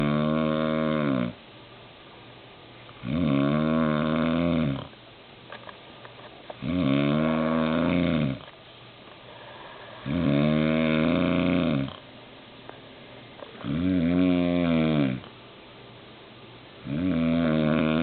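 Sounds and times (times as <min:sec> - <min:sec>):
man snoring loudly: 0:00.0 - 0:01.4, 0:03.0 - 0:04.9, 0:06.6 - 0:08.4, 0:10.0 - 0:12.0, 0:13.6 - 0:15.3, 0:16.9 - 0:18.0.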